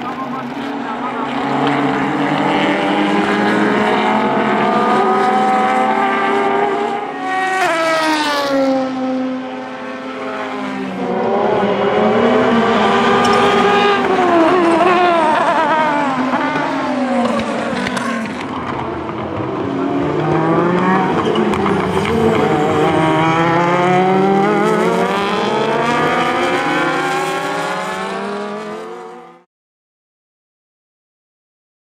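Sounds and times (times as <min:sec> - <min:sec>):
race car engine running hard: 0:00.0 - 0:07.0.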